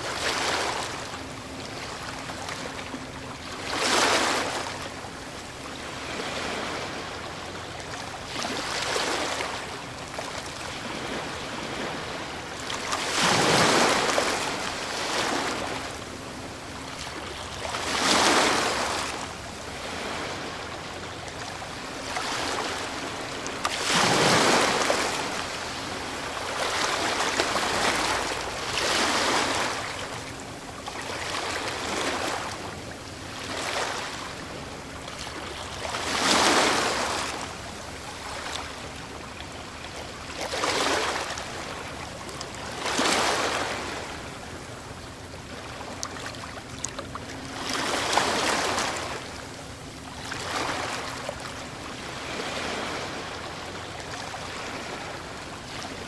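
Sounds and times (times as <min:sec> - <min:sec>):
surf hiss: 0:00.0 - 0:46.0
ocean waves crashing: 0:21.7 - 0:30.3, 0:52.0 - 0:55.9.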